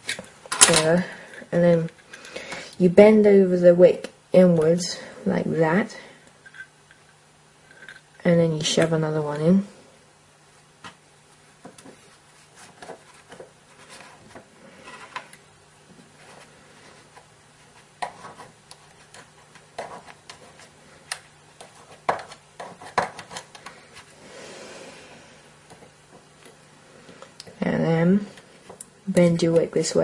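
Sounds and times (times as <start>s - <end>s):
soft rubbing: 10.5s - 15.2s.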